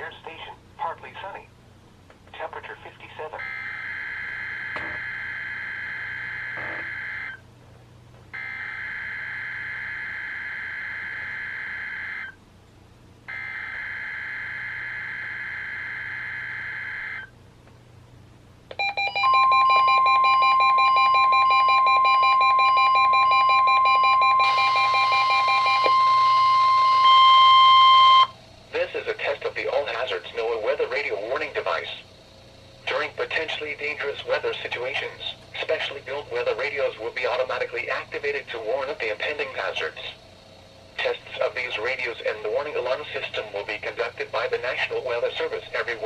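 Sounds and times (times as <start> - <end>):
weather radio beeping alarms: 18.8 - 32.0, 32.8 - 40.2, 41.0 - 46.0
buzzy digital data tones: 19.5 - 46.0.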